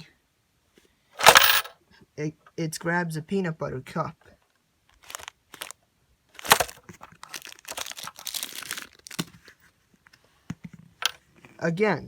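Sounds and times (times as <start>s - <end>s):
plastic mechanism rattling and scraping: 1.2s - 1.7s, 5.0s - 5.8s, 6.4s - 9.0s.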